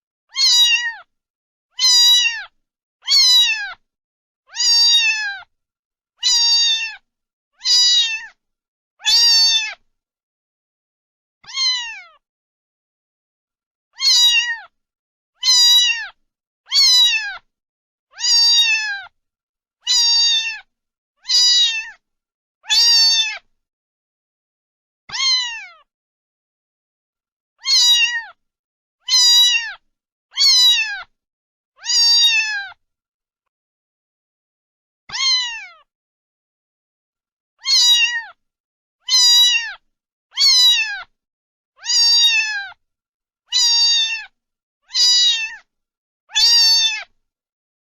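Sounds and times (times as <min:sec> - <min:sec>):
cat meowing: 0:00.3 - 0:01.1, 0:01.7 - 0:03.8, 0:04.5 - 0:05.5, 0:06.2 - 0:07.0, 0:07.6 - 0:08.4, 0:09.0 - 0:09.8, 0:11.4 - 0:12.2, 0:14.0 - 0:14.8, 0:15.4 - 0:17.5, 0:18.1 - 0:19.2, 0:19.8 - 0:22.0, 0:22.6 - 0:23.5, 0:25.1 - 0:25.9, 0:27.6 - 0:28.4, 0:29.0 - 0:29.8, 0:30.4 - 0:31.1, 0:31.8 - 0:32.8, 0:35.1 - 0:35.9, 0:37.6 - 0:38.4, 0:39.0 - 0:41.1, 0:41.8 - 0:42.8, 0:43.5 - 0:45.7, 0:46.3 - 0:47.1.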